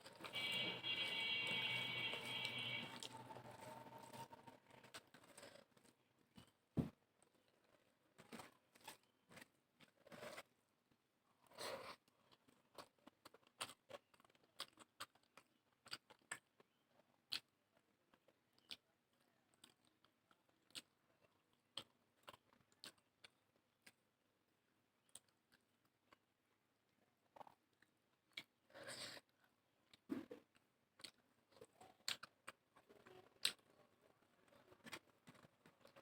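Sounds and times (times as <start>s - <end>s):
person chewing with wet mouth clicks: 12.0s - 24.0s.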